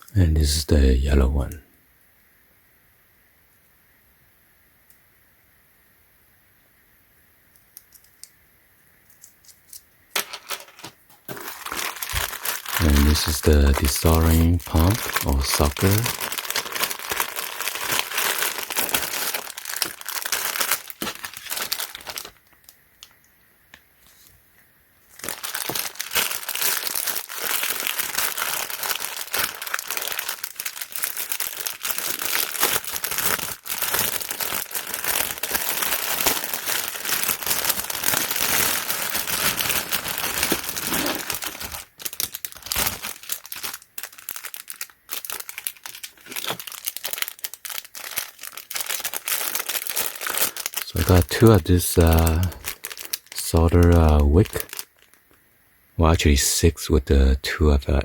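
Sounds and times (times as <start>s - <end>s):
plastic packaging crinkling: 9.1s - 24.3s, 25.1s - 55.4s.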